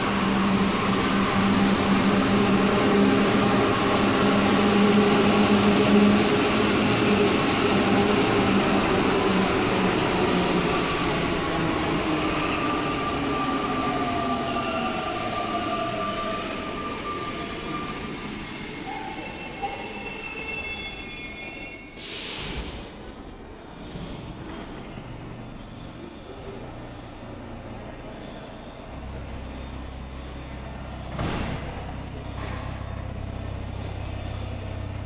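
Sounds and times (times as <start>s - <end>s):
train running with squealing tones: 0.0s - 22.1s, 23.2s - 35.0s
short hiss: 22.0s - 22.7s.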